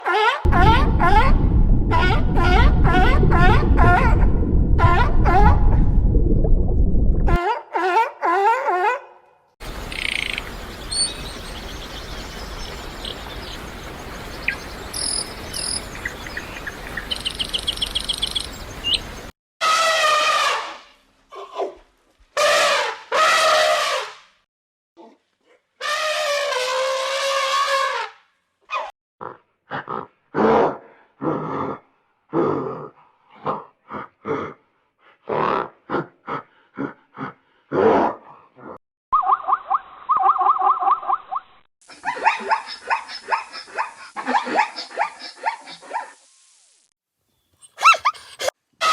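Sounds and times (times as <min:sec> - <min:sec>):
birds chirping: 0:09.6 - 0:19.3.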